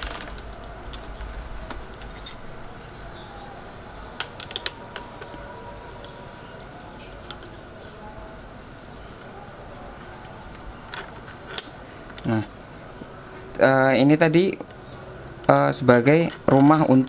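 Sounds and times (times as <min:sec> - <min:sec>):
light metal clicks and clinks: 0:01.9 - 0:02.5, 0:14.7 - 0:17.0.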